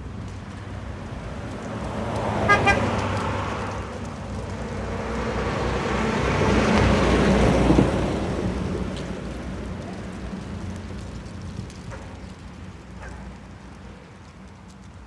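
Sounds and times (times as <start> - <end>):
vehicle road noise: 0.0 - 15.0
car horn beeps: 2.5 - 2.9.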